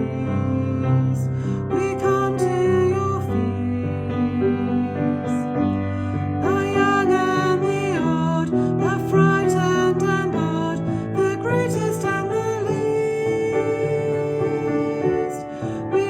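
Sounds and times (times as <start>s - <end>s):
slow hymn music: 0.0s - 16.0s.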